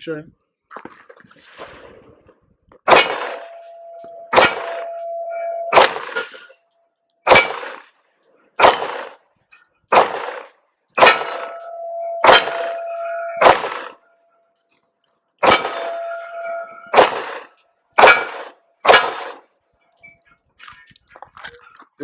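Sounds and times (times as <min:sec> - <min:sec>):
pistol shots: 0:02.8 - 0:05.1, 0:05.7 - 0:06.5, 0:07.2 - 0:08.0, 0:08.6 - 0:09.3, 0:09.9 - 0:14.0, 0:15.4 - 0:19.5
steel target ringing: 0:02.9 - 0:06.6, 0:07.2 - 0:07.8, 0:11.0 - 0:14.4, 0:15.4 - 0:19.5.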